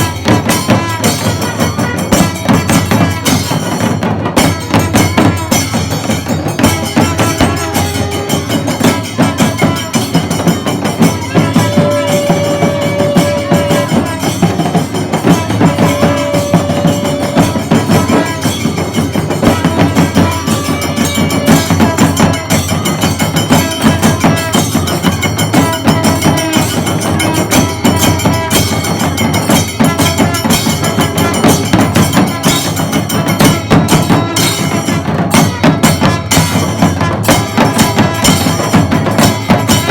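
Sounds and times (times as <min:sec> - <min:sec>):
clashing cymbals: 0:00.0 - 0:39.9
fast dense drumming: 0:00.0 - 0:39.9
horn holding a long note: 0:07.0 - 0:23.0.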